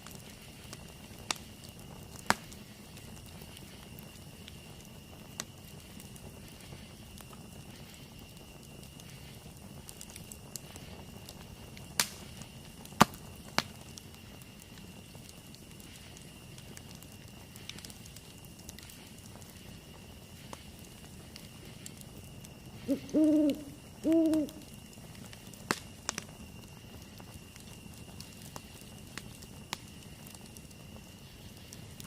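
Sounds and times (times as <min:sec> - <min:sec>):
burning wood popping: 0:00.0 - 0:32.0
campfire burning: 0:00.0 - 0:32.0.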